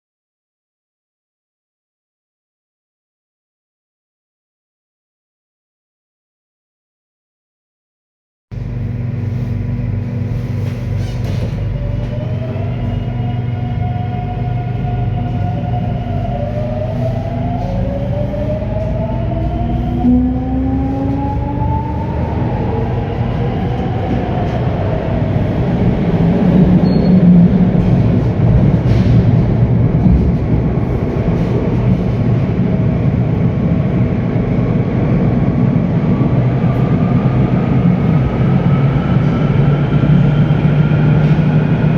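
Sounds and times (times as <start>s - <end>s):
low rail and wheel rumble: 8.5s - 41.9s.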